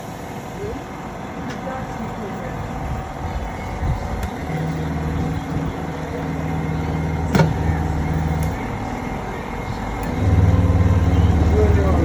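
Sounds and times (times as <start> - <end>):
low motor hum: 2.4 - 12.0.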